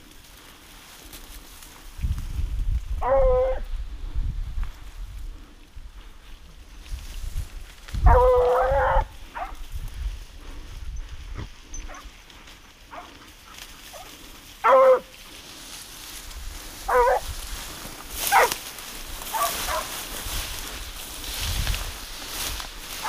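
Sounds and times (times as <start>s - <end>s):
hunting dogs barking: 3.0s - 3.7s, 8.0s - 9.7s, 11.7s - 15.4s, 16.8s - 17.4s, 18.1s - 20.8s.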